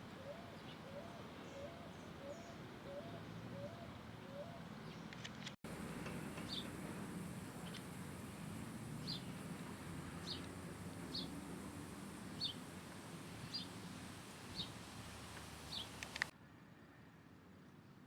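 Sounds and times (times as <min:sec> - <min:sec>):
bird chirping: 0:05.8 - 0:06.8, 0:07.4 - 0:08.4, 0:09.0 - 0:09.5, 0:10.2 - 0:11.4, 0:12.2 - 0:12.7, 0:13.4 - 0:13.9, 0:14.5 - 0:14.8, 0:15.4 - 0:16.3
sharp clicks: 0:15.4 - 0:16.3.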